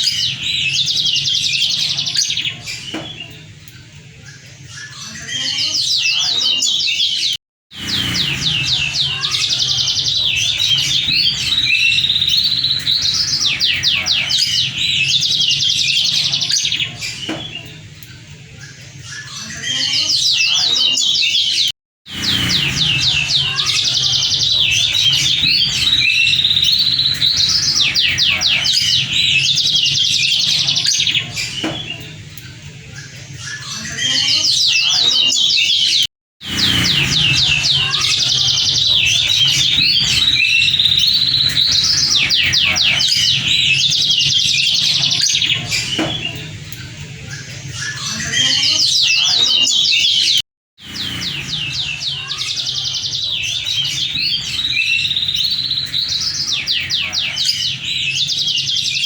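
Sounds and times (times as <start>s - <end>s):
canary singing trills: 0.0s - 59.0s
steady low hum: 7.8s - 15.0s, 50.8s - 52.2s.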